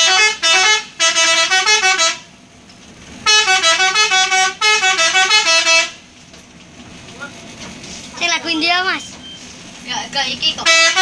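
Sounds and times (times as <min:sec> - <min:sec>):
multi-tone musical bus horn: 0:00.0 - 0:02.4, 0:03.2 - 0:06.1, 0:10.5 - 0:11.0.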